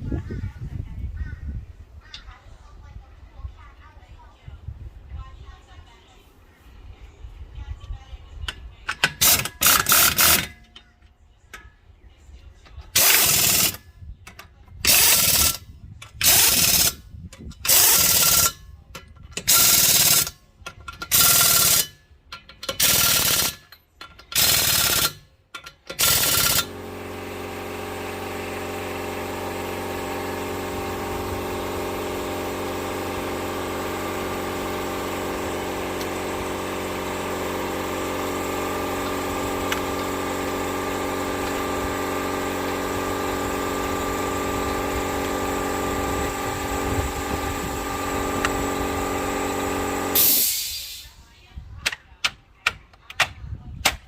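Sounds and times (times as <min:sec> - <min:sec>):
impact wrench rattling: 0:08.5 - 0:10.9, 0:12.6 - 0:51.0.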